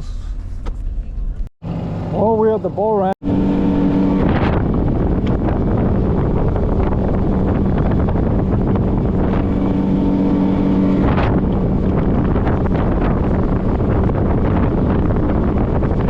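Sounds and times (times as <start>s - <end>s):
motorboat engine hum: 1.2s - 16.0s
wind rushing over microphone: 3.2s - 16.0s.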